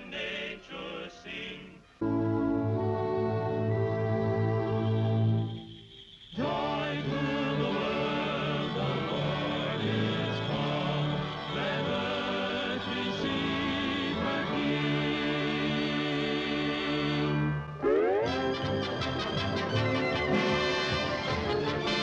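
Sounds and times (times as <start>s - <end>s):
choir singing with vibrato: 0.0s - 2.2s, 6.2s - 22.0s
orchestra playing: 17.3s - 22.0s.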